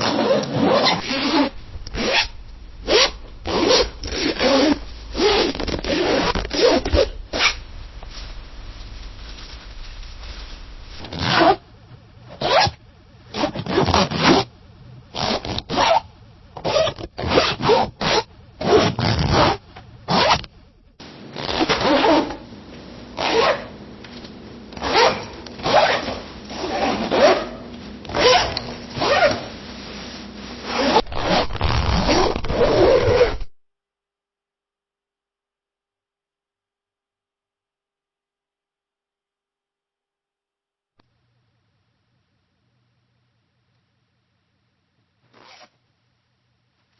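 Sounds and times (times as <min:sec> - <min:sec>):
zipper being zipped: 0:00.0 - 0:07.6, 0:11.0 - 0:11.6, 0:12.3 - 0:14.5, 0:15.1 - 0:20.4, 0:21.3 - 0:22.4, 0:23.2 - 0:23.7, 0:24.8 - 0:29.6, 0:30.5 - 0:33.5, 0:45.3 - 0:45.8.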